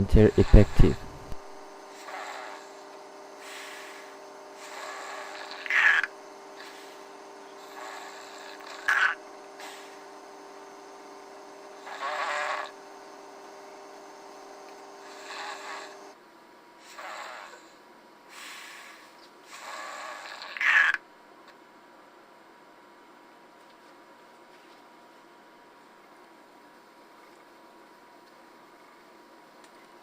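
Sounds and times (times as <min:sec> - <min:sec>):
person snoring: 0:00.0 - 0:10.0, 0:11.7 - 0:12.8, 0:15.0 - 0:16.2
steady hum: 0:00.0 - 0:16.8.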